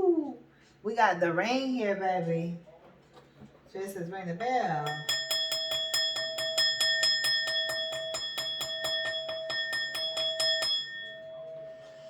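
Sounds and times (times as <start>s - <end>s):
small bell ringing rapidly: 4.8s - 11.9s.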